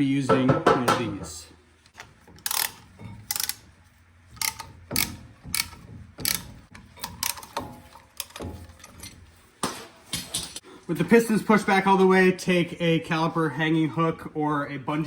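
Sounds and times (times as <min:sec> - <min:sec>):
ratcheting tool clicking: 0:02.4 - 0:03.6, 0:04.4 - 0:07.6.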